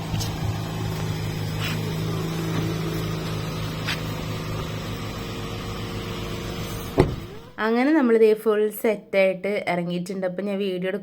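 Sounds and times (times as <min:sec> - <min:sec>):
car engine hum from inside: 0:00.0 - 0:07.6.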